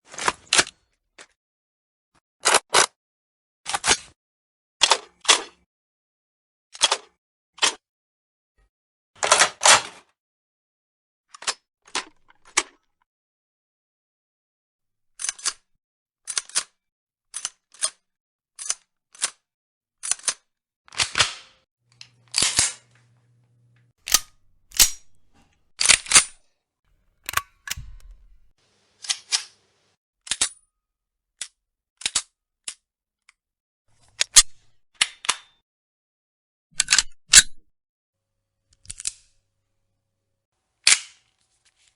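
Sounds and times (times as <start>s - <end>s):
machine gun cocking: 24.0s - 26.4s, 27.1s - 28.5s
pistol slides racked: 24.0s - 26.4s, 27.0s - 28.5s.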